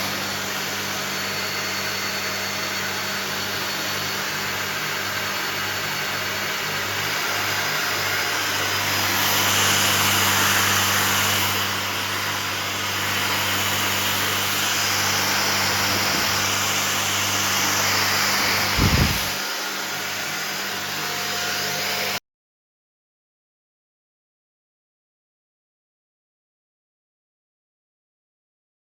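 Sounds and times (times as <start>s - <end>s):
vacuum cleaner running: 0.0s - 22.2s.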